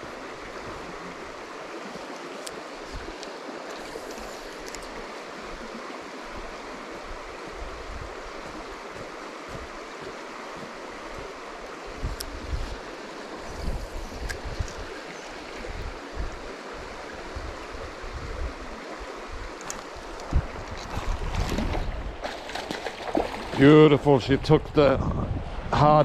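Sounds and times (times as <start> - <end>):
river rushing: 0.0 - 24.2
low rumbling gusts: 23.5 - 26.0.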